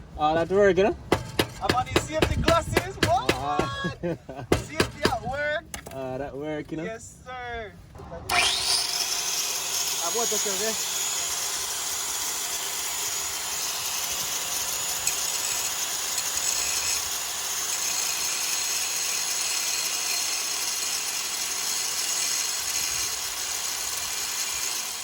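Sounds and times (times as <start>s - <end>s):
power tool whirring: 8.3s - 25.0s.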